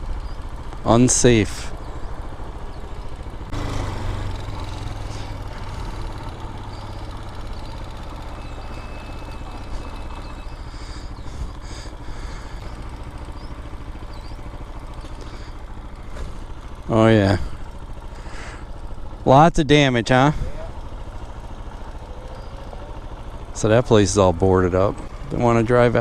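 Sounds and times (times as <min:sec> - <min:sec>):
dirt bike engine running: 0:00.0 - 0:26.0.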